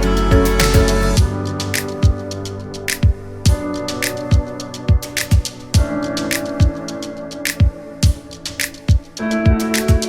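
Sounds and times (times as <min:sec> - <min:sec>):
held synth chords: 0:00.0 - 0:06.9
kick drums: 0:03.0 - 0:03.7, 0:04.3 - 0:06.0, 0:07.6 - 0:08.2, 0:08.9 - 0:10.0.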